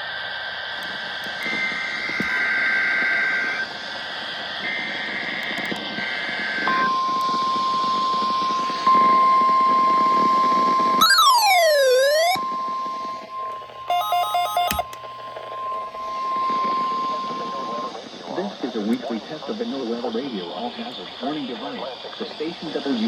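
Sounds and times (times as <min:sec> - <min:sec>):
radio static: 0:00.8 - 0:06.6
steady warning alarm tone: 0:00.8 - 0:18.7
swooping tone: 0:11.0 - 0:18.0
two-tone data bursts: 0:11.0 - 0:18.1.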